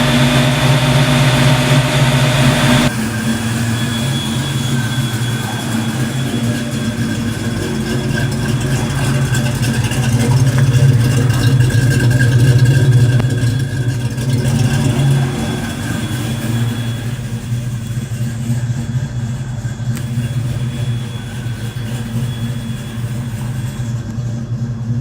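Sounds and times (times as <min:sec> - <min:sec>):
car engine idling: 0:00.0 - 0:25.0.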